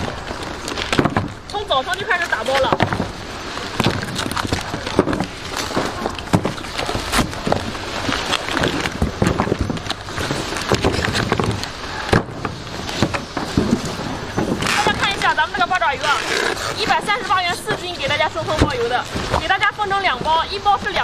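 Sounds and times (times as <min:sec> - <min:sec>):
packages knocking and clattering: 0:00.0 - 0:16.2
rustling plastic: 0:00.0 - 0:21.0.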